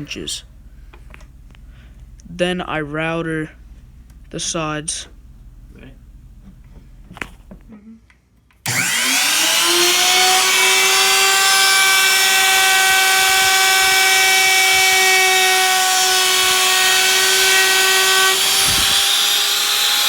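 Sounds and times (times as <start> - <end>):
bit cutting wood: 8.6 - 20.0
router motor whine: 8.7 - 20.0.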